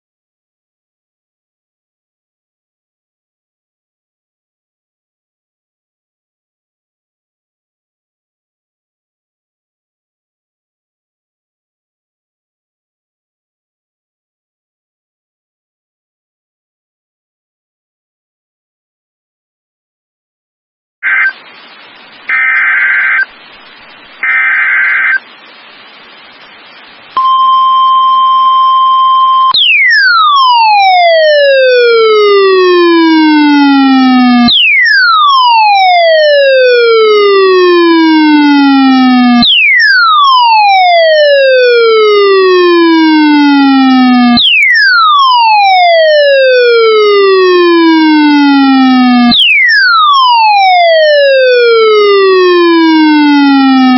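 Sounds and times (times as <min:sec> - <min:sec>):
high alert beep: 0:27.2 - 0:30.3
siren-like falling tone: 0:27.2 - 0:53.9.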